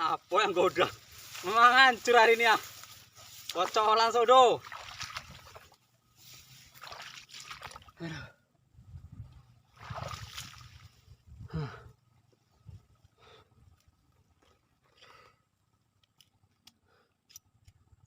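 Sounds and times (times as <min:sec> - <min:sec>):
water splashing and sloshing: 0:02.7 - 0:08.0, 0:09.6 - 0:11.2.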